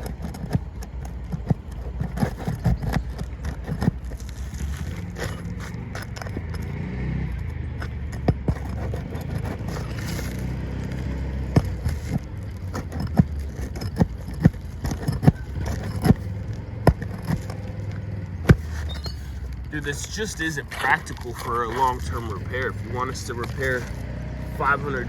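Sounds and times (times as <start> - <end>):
hand tools knocking and scraping metal: 0.0 - 25.0.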